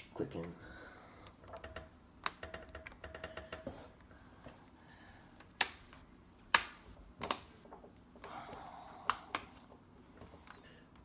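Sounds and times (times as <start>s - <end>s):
plastic clips snapping into place: 5.4s - 7.5s.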